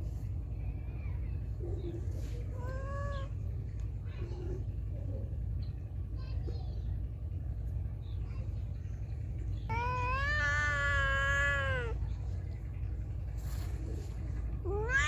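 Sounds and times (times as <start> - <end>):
cat meowing: 2.6 - 3.3, 9.7 - 12.0, 14.6 - 15.0.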